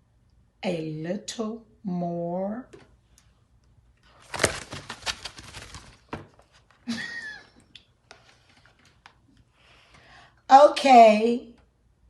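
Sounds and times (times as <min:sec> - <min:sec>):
book pages rustling: 0:04.0 - 0:06.9, 0:08.0 - 0:09.4.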